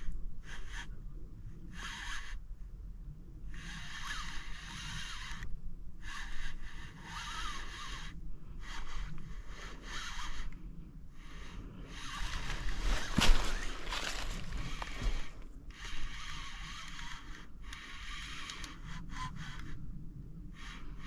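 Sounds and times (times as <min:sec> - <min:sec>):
fishing reel cranking: 0:03.6 - 0:10.6, 0:14.2 - 0:19.8.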